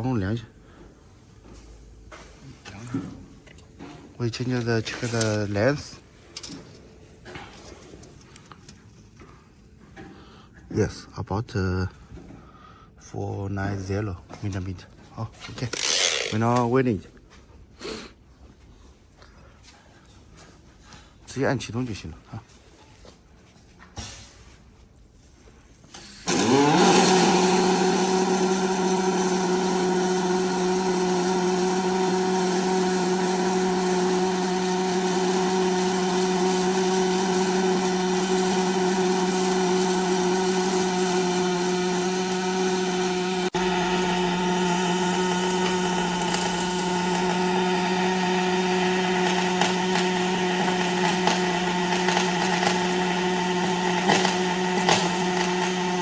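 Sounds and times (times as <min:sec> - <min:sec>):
welding arc hum and hiss: 0:15.4 - 0:16.6, 0:25.4 - 0:56.0
welding arc whine: 0:15.6 - 0:16.5, 0:25.9 - 0:56.0.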